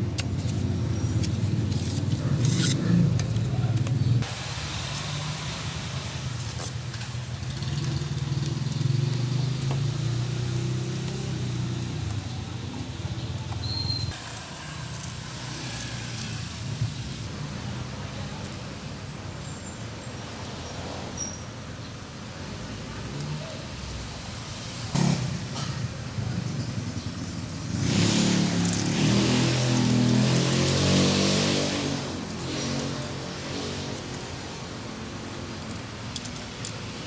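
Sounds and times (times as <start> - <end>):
scooter engine running: 7.2 - 13.6, 25.0 - 37.0.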